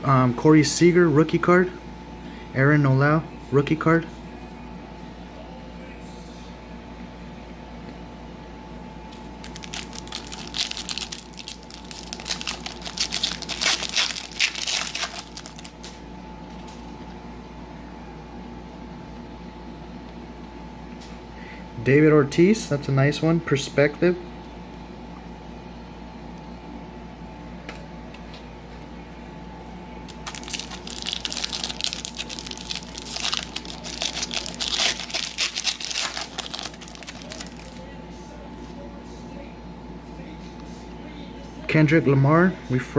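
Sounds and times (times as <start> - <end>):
room hum: 0.0 - 42.9
foil wrapper crinkling: 9.1 - 17.0, 30.0 - 37.8.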